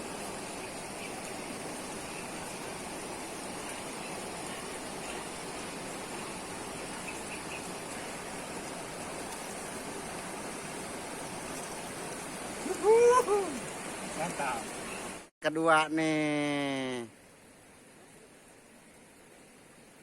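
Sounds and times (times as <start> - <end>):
river water rushing over rocks: 0.0 - 15.3.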